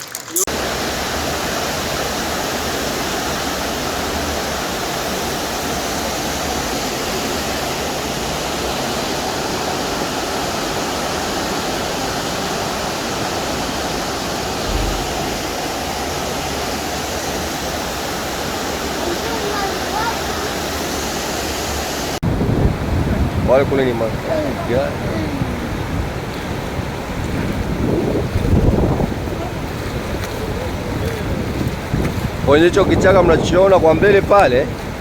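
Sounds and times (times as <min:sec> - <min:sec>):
floodwater rushing: 0:00.0 - 0:35.0
low bump: 0:14.6 - 0:16.3.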